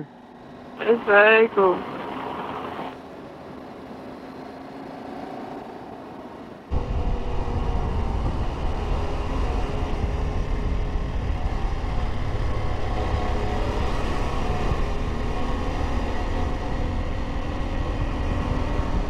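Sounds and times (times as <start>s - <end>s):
motorcycle engine running: 6.7s - 19.0s
wind rush: 6.7s - 19.0s.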